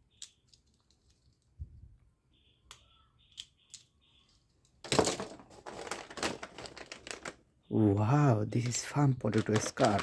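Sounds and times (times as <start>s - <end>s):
toy handcuffs clicking: 0.0s - 1.5s, 2.7s - 3.9s.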